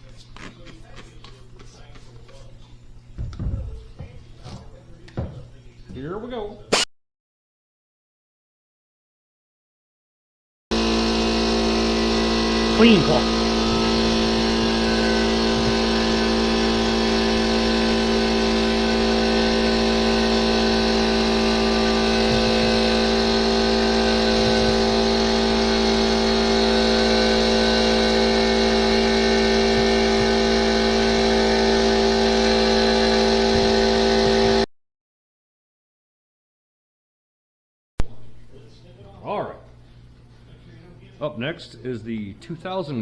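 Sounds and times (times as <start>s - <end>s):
electric polisher whining: 10.7s - 34.7s.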